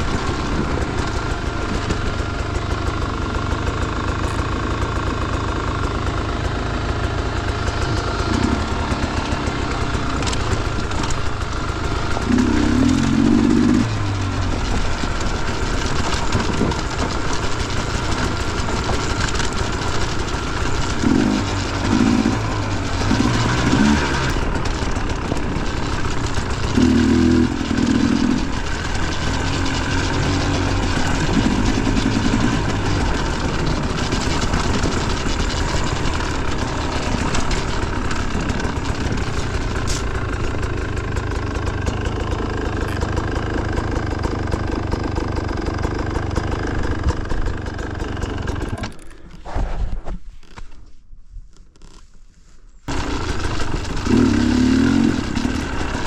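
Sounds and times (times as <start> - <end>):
dirt bike engine revving: 0.0 - 49.1, 52.9 - 56.0.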